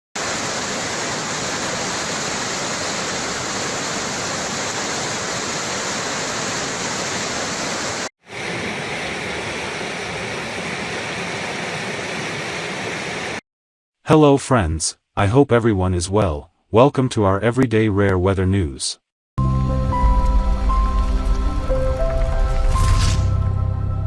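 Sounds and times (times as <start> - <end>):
rushing floodwater: 0.2 - 13.4.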